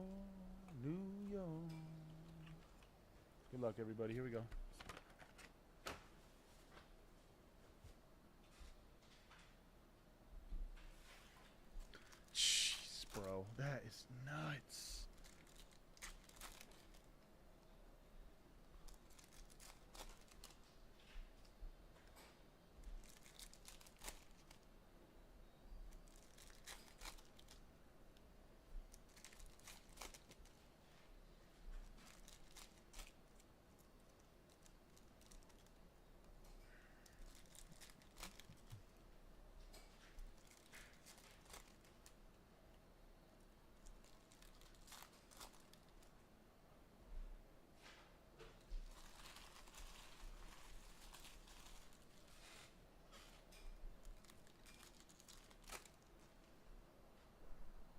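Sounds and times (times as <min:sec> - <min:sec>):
wrappers crinkling and tearing: 0:15.0 - 0:17.3, 0:18.8 - 0:20.8, 0:22.8 - 0:24.7, 0:25.9 - 0:27.7, 0:28.9 - 0:30.6, 0:31.8 - 0:35.9, 0:37.0 - 0:38.9, 0:40.1 - 0:42.2, 0:43.8 - 0:46.1, 0:48.8 - 0:56.5.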